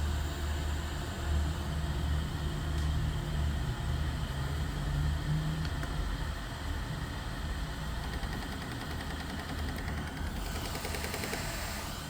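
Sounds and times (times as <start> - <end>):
printer ticking fast: 8.1 - 11.8.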